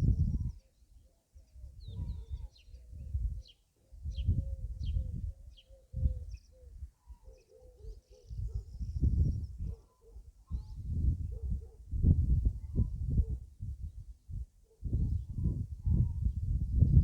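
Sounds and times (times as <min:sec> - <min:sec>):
wind buffeting microphone: 0:00.0 - 0:00.6, 0:01.6 - 0:06.9, 0:08.3 - 0:09.8, 0:10.5 - 0:17.0
small birds chirping: 0:00.0 - 0:11.8.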